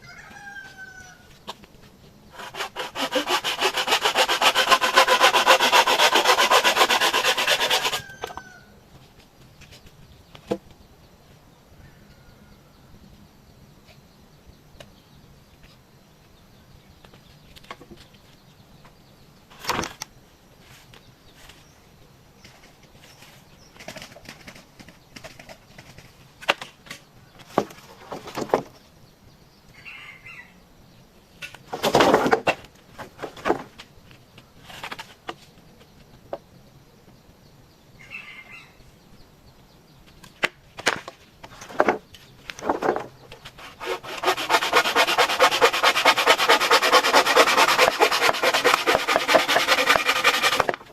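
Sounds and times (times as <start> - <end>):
bamboo rustling and knocking: 22.4 - 28.8, 31.4 - 36.5, 40.1 - 50.9.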